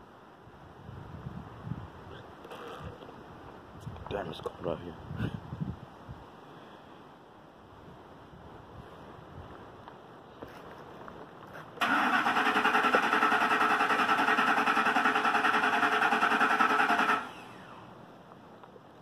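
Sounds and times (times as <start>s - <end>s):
starter motor cranking engine: 11.8s - 17.9s.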